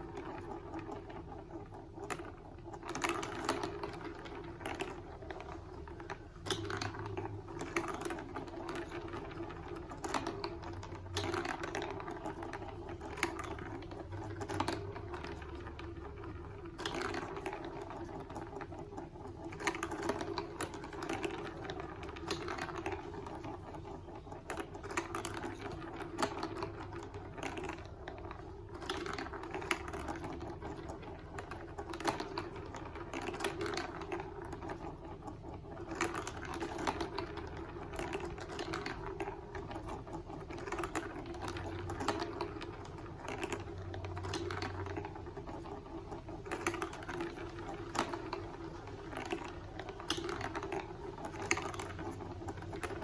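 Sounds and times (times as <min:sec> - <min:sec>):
plastic pieces clicking and rattling: 0:00.0 - 0:53.0.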